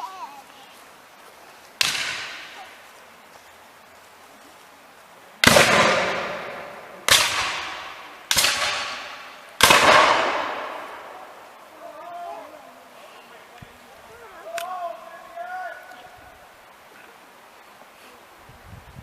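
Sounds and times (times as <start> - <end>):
gunshots with echo: 5.4 - 11.3.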